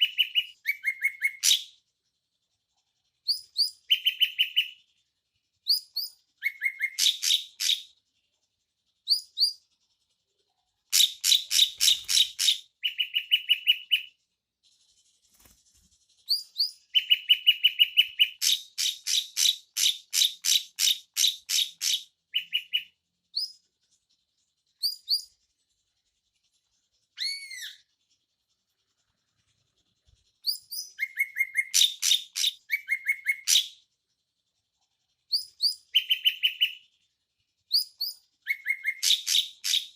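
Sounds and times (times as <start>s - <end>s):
bird chattering song: 0.0s - 1.8s, 3.2s - 4.8s, 5.6s - 7.9s, 10.9s - 14.1s, 16.2s - 23.6s, 30.4s - 33.8s, 35.3s - 36.8s, 37.7s - 39.9s.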